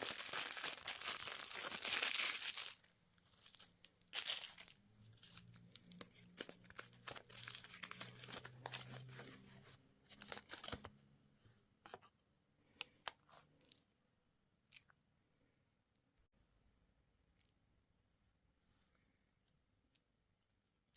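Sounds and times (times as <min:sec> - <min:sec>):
candy wrapper crinkling: 0:00.0 - 0:09.3, 0:10.1 - 0:10.8.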